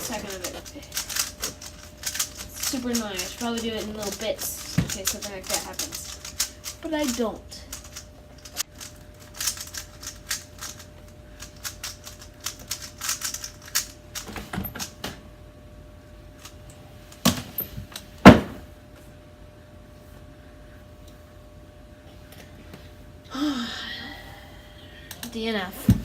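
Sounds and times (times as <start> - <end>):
puzzle cube plastic clicks: 0.0 - 14.9.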